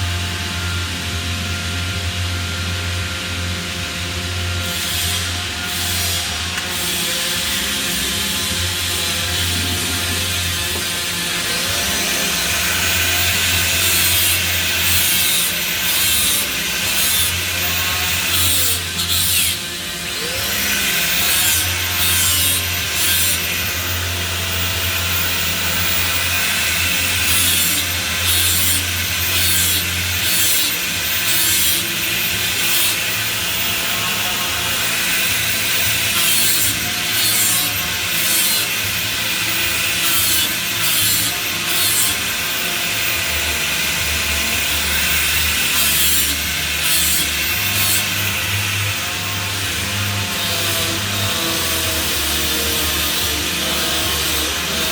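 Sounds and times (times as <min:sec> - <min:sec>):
welding arc crackling: 0:00.0 - 0:54.9.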